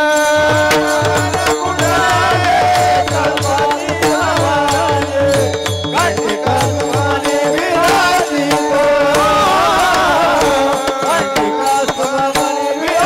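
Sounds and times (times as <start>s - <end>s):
sharp percussion strikes: 0.0s - 13.0s
drum beat: 0.5s - 13.0s.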